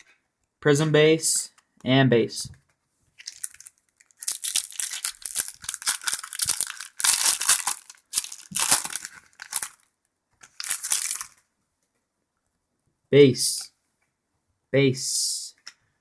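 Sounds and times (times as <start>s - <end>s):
wrapper tearing and crinkling: 3.2s - 11.4s.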